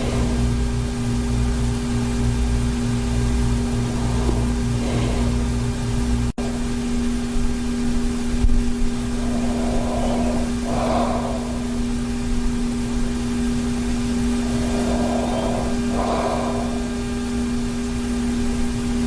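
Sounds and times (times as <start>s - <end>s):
man snoring: 0.0s - 1.0s, 3.0s - 6.7s, 9.1s - 12.2s, 14.2s - 17.4s
background hum: 0.0s - 19.0s.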